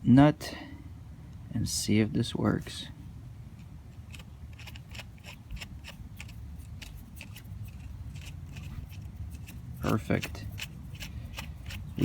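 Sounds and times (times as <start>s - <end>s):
small metallic clicks: 3.6s - 12.0s.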